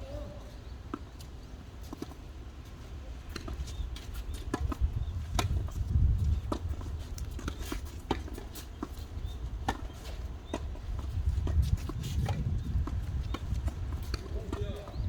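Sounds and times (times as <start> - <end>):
tennis ball bouncing: 4.4 - 15.0
wind rumble on microphone: 4.5 - 7.6, 10.8 - 15.0.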